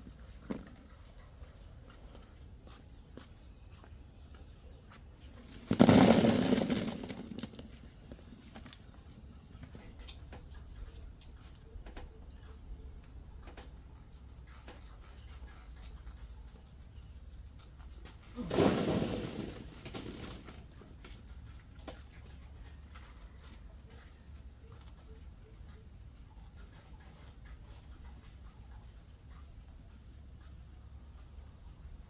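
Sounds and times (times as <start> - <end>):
high insect drone: 0.0 - 32.0
loud rustling crash: 5.5 - 7.9, 18.4 - 20.7.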